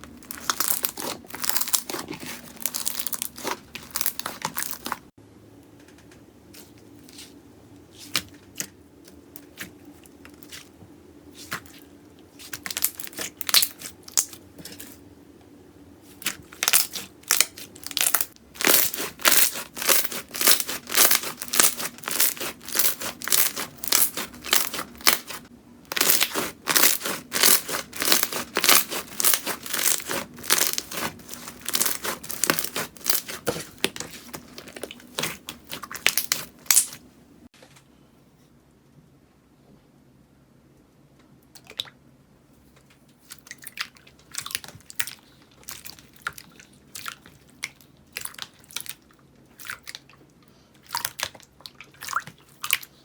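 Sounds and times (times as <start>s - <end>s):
slime crackling and popping: 0.1s - 5.1s, 12.4s - 14.4s, 16.2s - 37.0s.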